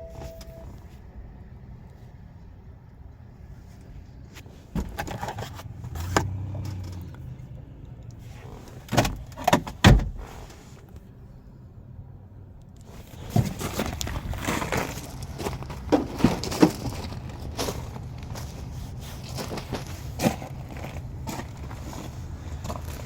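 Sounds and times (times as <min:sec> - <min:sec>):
clunks and knocks: 0:08.8 - 0:10.2.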